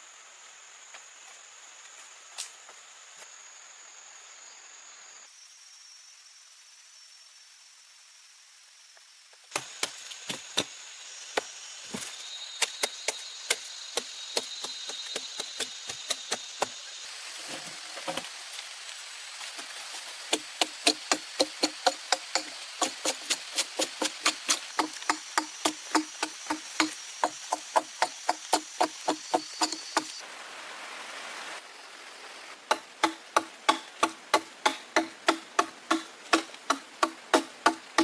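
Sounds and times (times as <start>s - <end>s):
high insect drone: 0.0s - 30.2s
hand tool striking: 12.6s - 16.7s, 20.3s - 30.1s, 32.7s - 38.0s.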